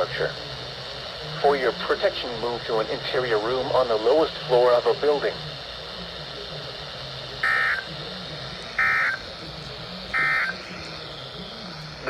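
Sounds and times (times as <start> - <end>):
steady radio static: 0.0 - 12.0
warbling digital data tone bursts: 7.4 - 7.9, 8.6 - 9.3, 10.0 - 10.8.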